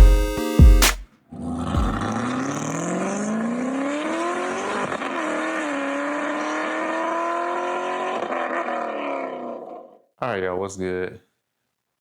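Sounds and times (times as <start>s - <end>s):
car engine accelerating: 1.7s - 9.7s.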